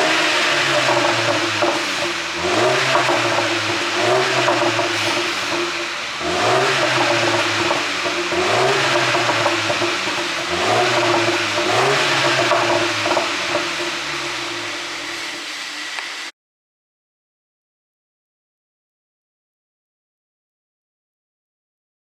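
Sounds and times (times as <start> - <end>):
car engine revving: 0.0 - 16.3.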